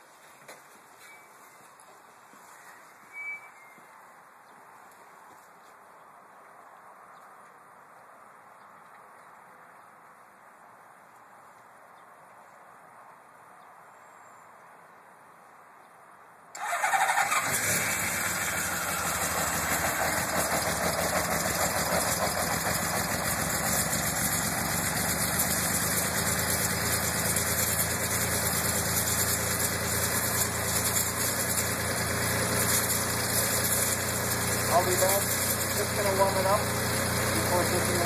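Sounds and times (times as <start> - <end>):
motorcycle engine starting and idling: 16.6 - 38.0.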